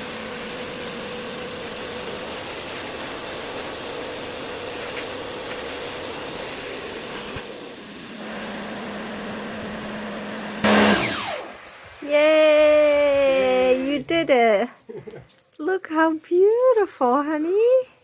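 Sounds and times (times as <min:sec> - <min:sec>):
pressure washer motor humming: 0:00.0 - 0:14.1
pressure washer jet hissing: 0:00.0 - 0:14.2.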